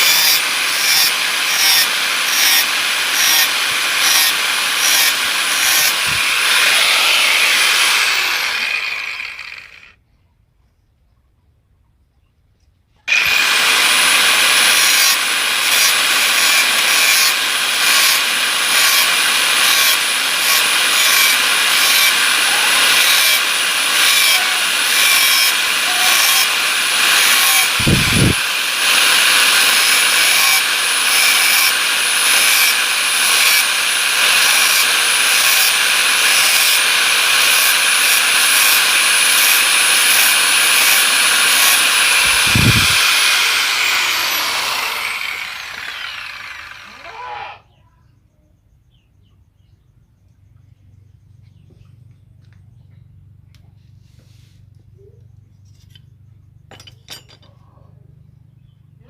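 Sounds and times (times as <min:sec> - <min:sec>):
angle grinder grinding saw teeth: 0:00.0 - 0:10.0, 0:13.1 - 0:47.6.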